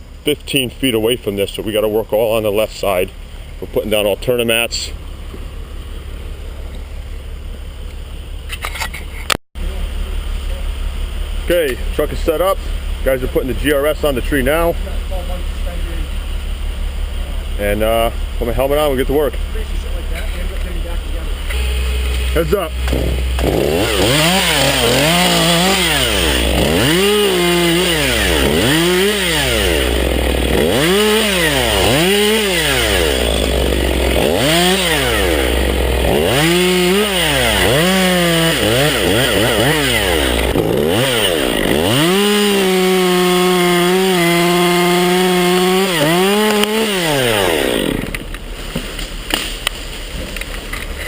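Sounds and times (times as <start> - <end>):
chainsaw revving: 17.0 - 50.8.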